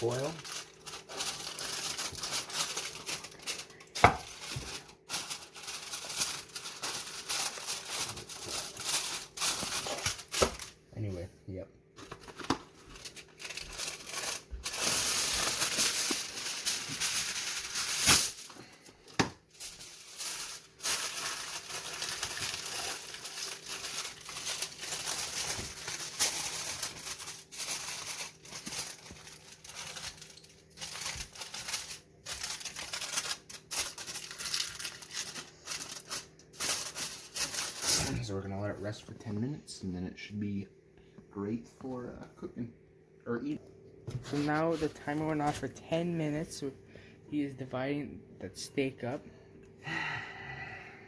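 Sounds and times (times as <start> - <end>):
aluminium foil crinkling: 0.0 - 11.2, 12.0 - 38.6.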